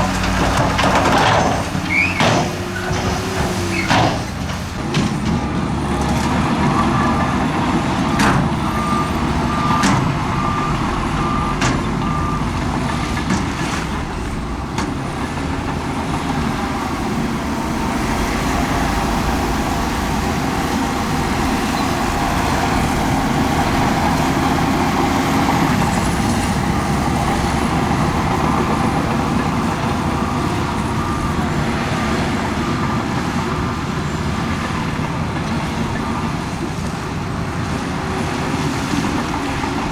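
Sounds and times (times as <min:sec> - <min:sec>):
heavy diesel machinery running: 0:00.0 - 0:39.9
reversing alarm beeping: 0:06.6 - 0:34.9.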